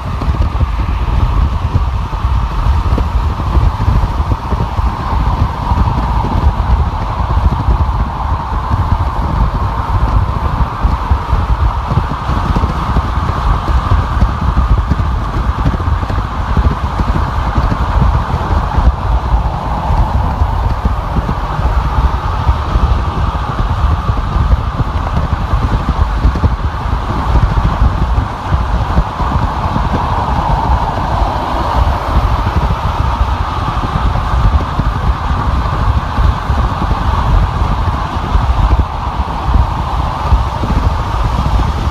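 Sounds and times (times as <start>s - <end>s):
car road and tyre noise: 0.0s - 41.9s.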